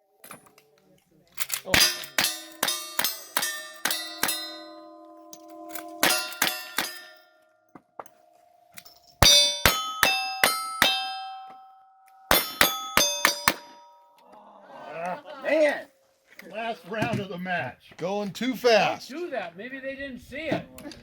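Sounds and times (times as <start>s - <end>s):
steel plate clanging: 1.4s - 14.1s.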